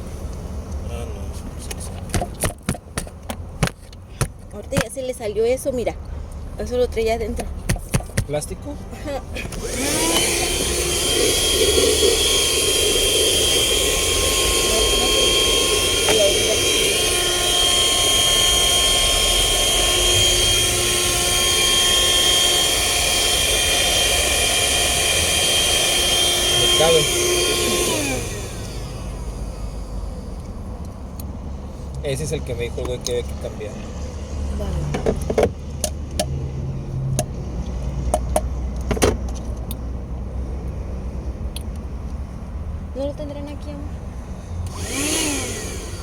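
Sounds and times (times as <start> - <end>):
vacuum cleaner running: 9.4 - 30.5, 44.7 - 46.0.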